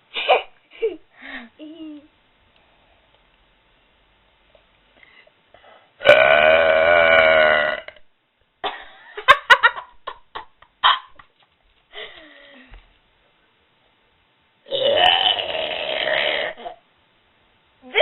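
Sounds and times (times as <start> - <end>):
person burping: 6.0 - 8.1, 14.7 - 16.8.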